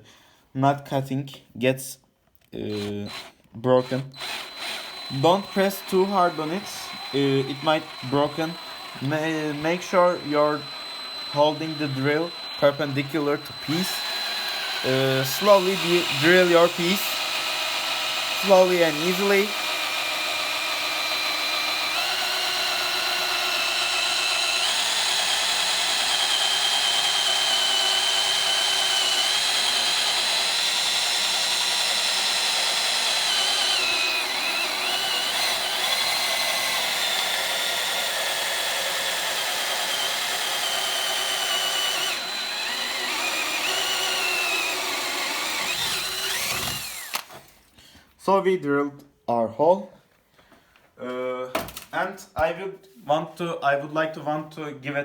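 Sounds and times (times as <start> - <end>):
electric drill boring into steel: 2.7 - 47.5.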